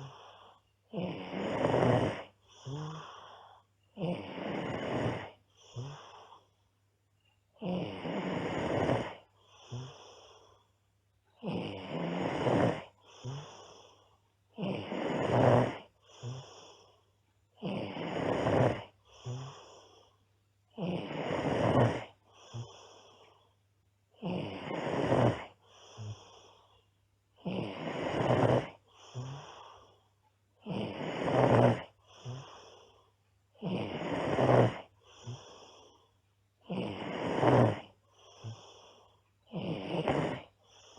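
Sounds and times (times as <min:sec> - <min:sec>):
girl snoring loudly: 0:00.0 - 0:06.4, 0:07.6 - 0:10.4, 0:11.4 - 0:16.9, 0:17.6 - 0:19.9, 0:20.7 - 0:23.0, 0:24.2 - 0:26.4, 0:27.4 - 0:29.9, 0:30.6 - 0:32.7, 0:33.6 - 0:35.7, 0:36.7 - 0:38.7, 0:39.5 - 0:40.9
soft breath: 0:00.0 - 0:23.7, 0:24.5 - 0:36.3, 0:36.9 - 0:40.9.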